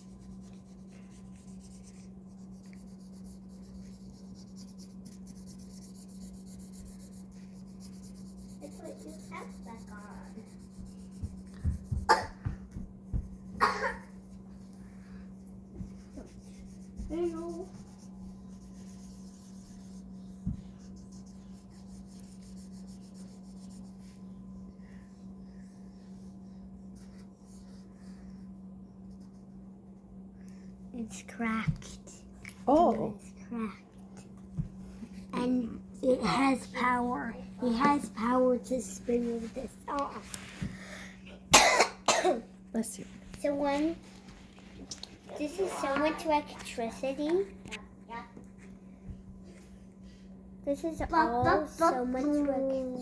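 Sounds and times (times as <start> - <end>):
pencil scratching on paper: 0.0 - 12.2, 15.9 - 24.2
low electrical hum: 0.0 - 53.0.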